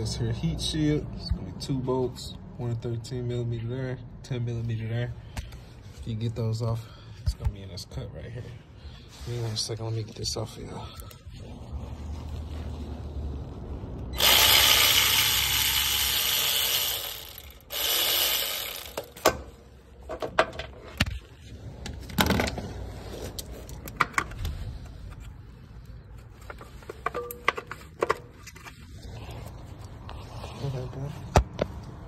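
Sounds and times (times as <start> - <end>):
power tool spinning bolts: 14.1 - 19.5.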